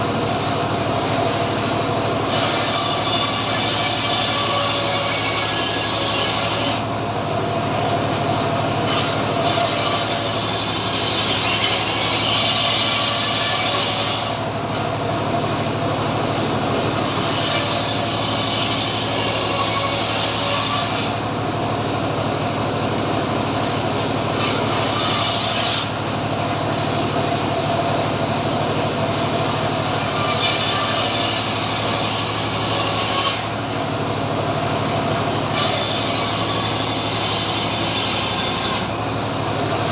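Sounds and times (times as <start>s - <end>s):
sawmill engine running: 0.0s - 39.9s
saw blade cutting wood: 1.0s - 7.0s, 8.0s - 15.7s, 16.3s - 21.4s, 24.1s - 26.6s, 29.4s - 33.8s, 34.8s - 39.1s.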